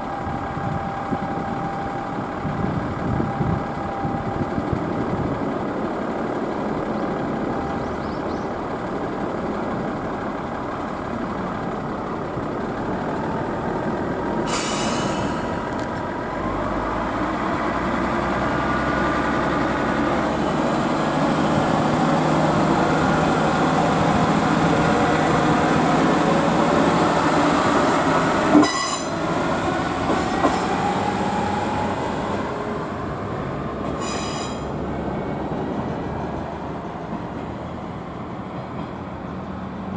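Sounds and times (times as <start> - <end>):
railcar engine and rail rumble: 0.0 - 39.9.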